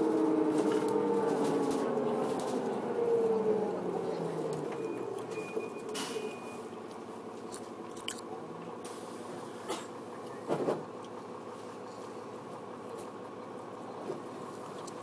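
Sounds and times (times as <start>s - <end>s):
construction machinery engine running: 0.0s - 15.0s.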